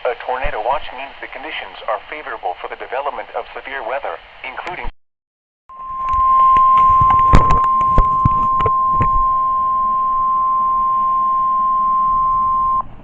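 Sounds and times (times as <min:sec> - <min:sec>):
static hiss: 0:00.0 - 0:04.9
steady warning alarm tone: 0:05.7 - 0:12.9.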